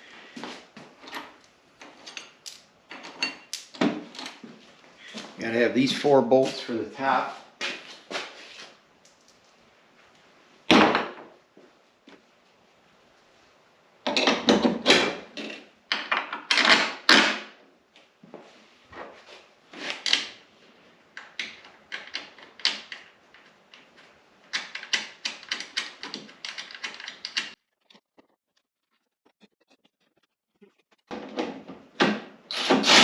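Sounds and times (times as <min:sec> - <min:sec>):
hand tools and metal hardware clattering: 0:00.8 - 0:04.5.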